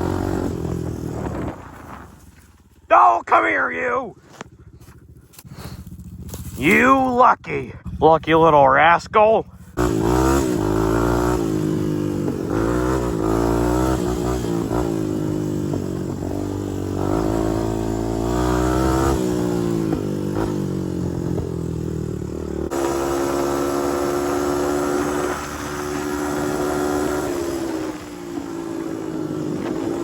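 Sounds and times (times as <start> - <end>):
wind rumbling on microphone: 0.0 - 2.8, 24.4 - 30.0
atv engine accelerating: 0.0 - 30.0.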